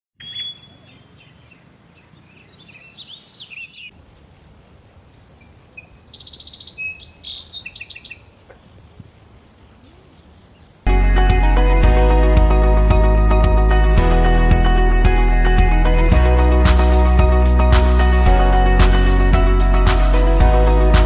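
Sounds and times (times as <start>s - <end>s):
birds chirping: 0.2s - 4.0s, 5.4s - 10.9s
outdoor background noise: 0.2s - 10.9s.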